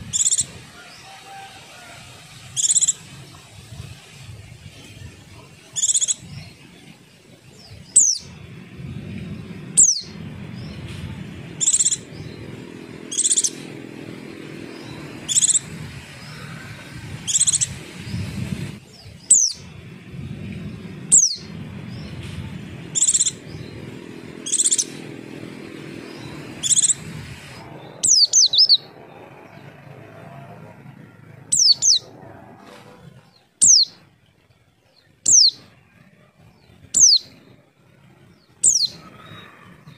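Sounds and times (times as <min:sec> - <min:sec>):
steady low rumble: 0:02.4 - 0:34.2
bird chirps and falling whistles: 0:38.6 - 0:39.6.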